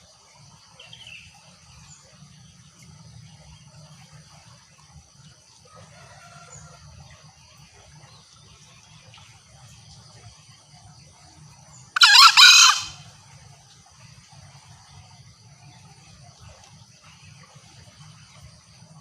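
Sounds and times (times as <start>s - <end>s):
insect trilling: 12.0s - 13.0s
junglefowl shrill crow: 12.0s - 13.1s.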